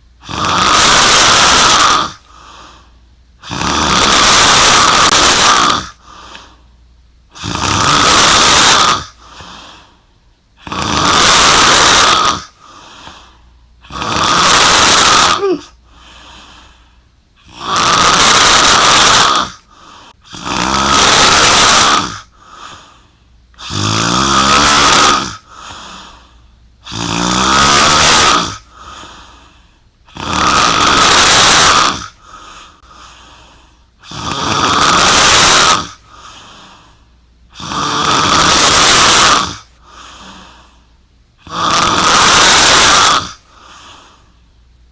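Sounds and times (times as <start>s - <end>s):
woman snoring loudly: 0.2s - 2.3s, 3.4s - 6.1s, 7.3s - 9.6s, 10.6s - 12.8s, 13.8s - 15.8s, 17.4s - 22.7s, 23.6s - 26.0s, 26.8s - 29.2s, 30.1s - 33.2s, 34.0s - 36.6s, 37.5s - 40.5s, 41.4s - 43.8s
soft breaths: 2.2s - 3.2s, 5.9s - 6.9s, 9.1s - 10.4s, 12.5s - 13.9s, 15.4s - 17.6s, 19.6s - 20.4s, 22.3s - 23.6s, 25.4s - 26.8s, 28.6s - 30.1s, 32.1s - 34.1s, 36.0s - 37.3s, 39.7s - 41.1s, 43.4s - 44.7s.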